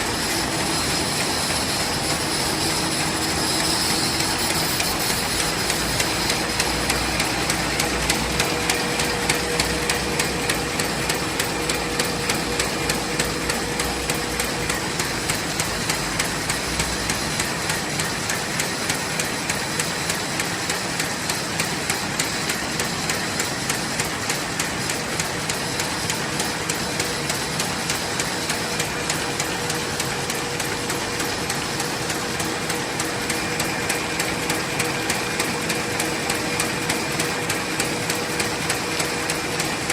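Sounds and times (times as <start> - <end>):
machine hum: 0.0 - 18.0
machine knocking rhythmically: 0.0 - 39.9.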